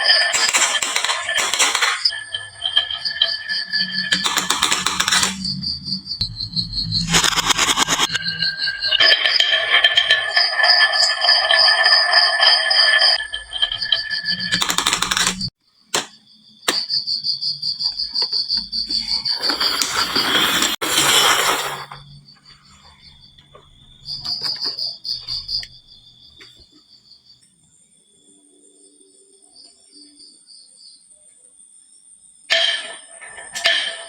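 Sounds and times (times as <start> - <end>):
sharp clicks: 0.0 - 2.2, 3.0 - 6.2, 7.0 - 8.2, 13.8 - 17.0
marbles rolling down wooden run: 0.0 - 5.4, 9.1 - 15.5
high pulsing trill: 2.0 - 15.5.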